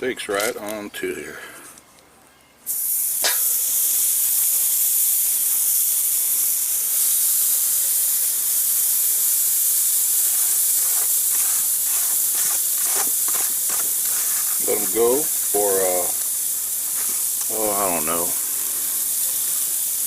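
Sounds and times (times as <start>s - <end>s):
crackling pops: 2.7s - 4.6s, 10.2s - 19.8s
steaks sizzling on a grill: 2.7s - 20.0s.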